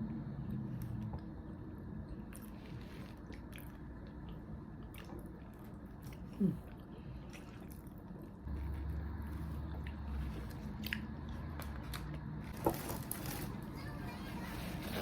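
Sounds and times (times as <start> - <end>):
low steady hum: 0.0 - 15.0
person chewing and eating: 2.1 - 12.9.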